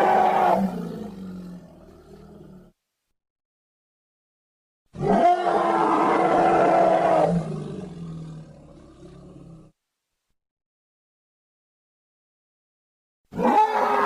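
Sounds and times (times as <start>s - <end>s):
loud drawn-out cry: 0.0s - 0.9s, 5.0s - 7.5s, 13.3s - 14.0s.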